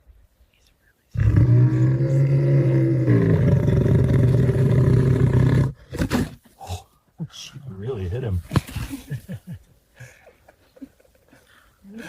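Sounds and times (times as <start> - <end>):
lion snoring: 1.2 - 6.3.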